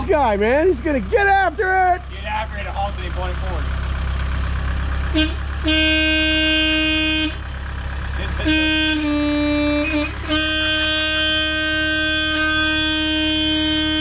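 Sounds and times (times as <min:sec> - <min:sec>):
engine idling: 0:00.0 - 0:14.0
vehicle horn blasts: 0:05.1 - 0:07.4, 0:08.2 - 0:14.0.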